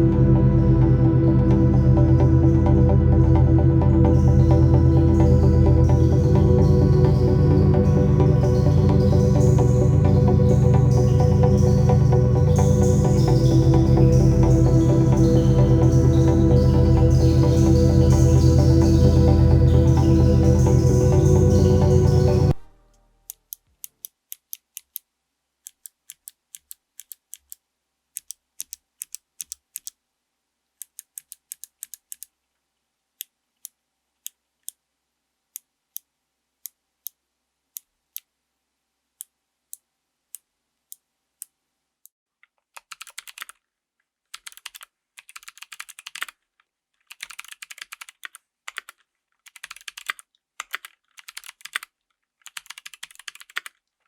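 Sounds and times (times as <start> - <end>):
clicky keyboard typing: 42.7 - 43.6, 44.3 - 46.4, 47.0 - 53.8.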